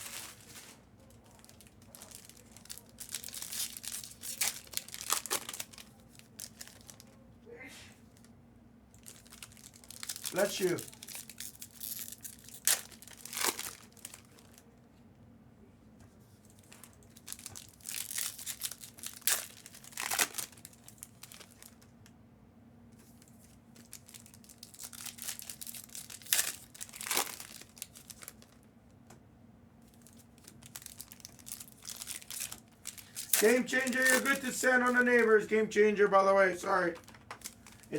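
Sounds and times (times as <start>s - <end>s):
plastic packaging crinkling and tearing: 0.0s - 7.2s, 9.0s - 14.7s, 16.4s - 21.9s, 23.7s - 28.6s, 29.8s - 35.5s, 36.7s - 37.9s
faint steady hum: 0.0s - 37.9s.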